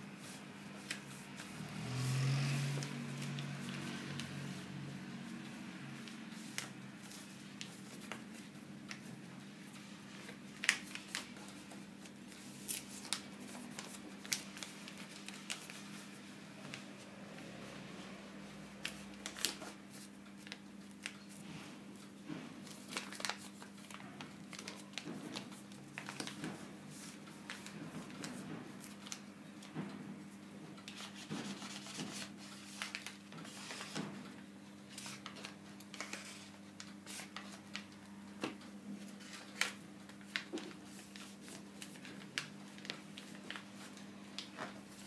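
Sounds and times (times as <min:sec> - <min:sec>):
paper rustling: 0:05.5 - 0:17.0, 0:18.7 - 0:29.7, 0:30.8 - 0:34.2, 0:34.9 - 0:45.0.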